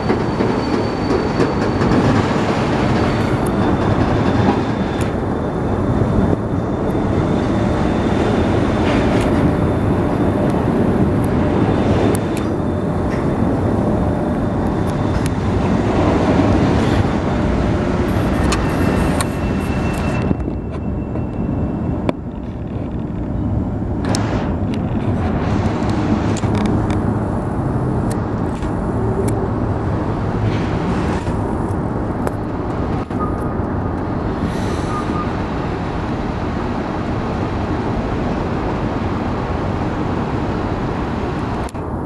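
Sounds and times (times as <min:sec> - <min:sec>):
faint wheel squeal: 0:00.0 - 0:05.1, 0:34.5 - 0:35.4
freight train rumbling past: 0:00.0 - 0:22.7, 0:23.3 - 0:42.0.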